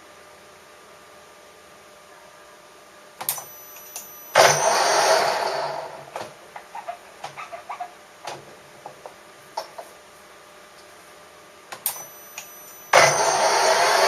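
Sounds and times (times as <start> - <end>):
metal tools tapping and clicking: 3.3 - 4.2, 11.8 - 13.0
metallic clink: 3.3 - 4.9, 11.8 - 14.0.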